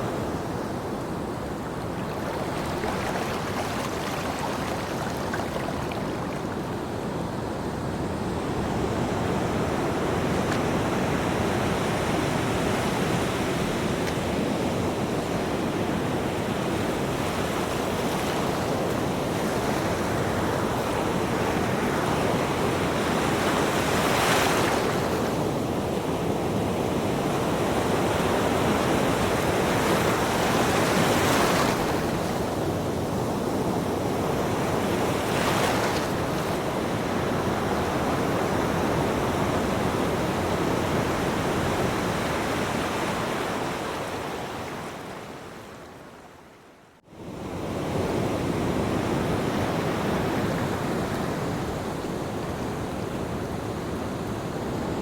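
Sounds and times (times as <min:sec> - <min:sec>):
ocean waves breaking: 0:00.0 - 0:15.7.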